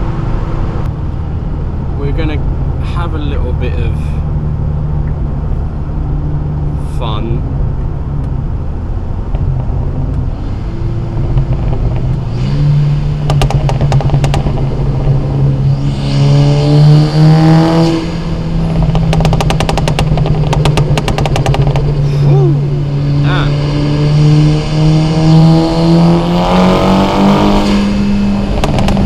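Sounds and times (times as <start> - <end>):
car engine and exhaust: 0.0 - 29.0
rapid ticks: 13.3 - 14.7, 18.8 - 21.9.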